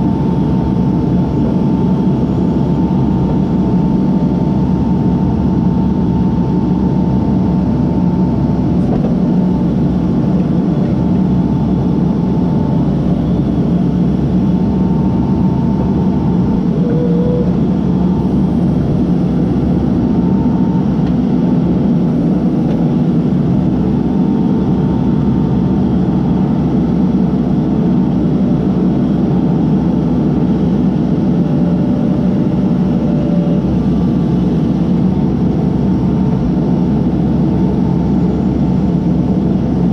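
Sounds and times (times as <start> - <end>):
diesel engine running: 0.0 - 39.9
thin whine: 12.0 - 22.8.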